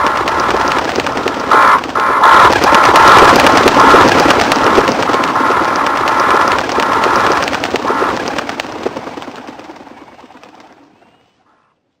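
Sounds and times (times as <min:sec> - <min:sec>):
flapping wings: 0:00.0 - 0:11.0.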